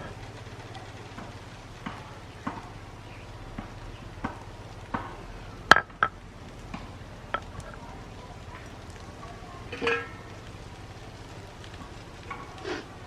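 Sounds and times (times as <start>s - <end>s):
spoon clinking against a pot: 9.7s - 10.3s.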